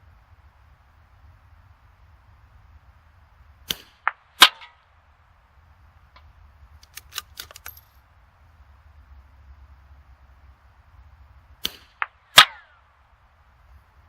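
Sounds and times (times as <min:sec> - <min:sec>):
rifle shot crack: 0:03.6 - 0:04.8, 0:11.6 - 0:12.8
rifle bolt clicks: 0:06.8 - 0:08.0.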